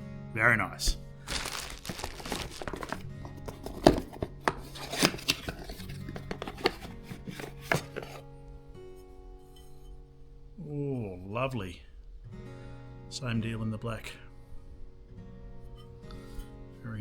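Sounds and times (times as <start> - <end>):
quiet background music: 0.0 - 17.0
cups and lids clicking and knocking: 2.3 - 8.2.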